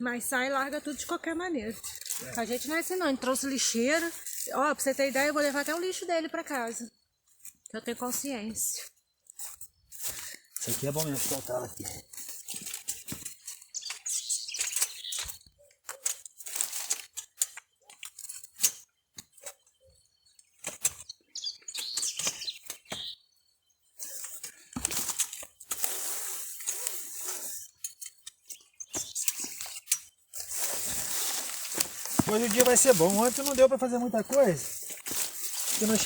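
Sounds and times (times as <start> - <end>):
rustling and crinkling litter: 4.0 - 5.9, 10.0 - 13.7, 24.0 - 27.8, 29.0 - 36.0.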